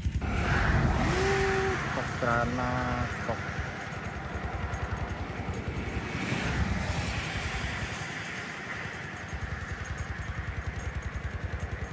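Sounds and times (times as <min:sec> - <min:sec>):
small engine running: 0:00.0 - 0:11.9.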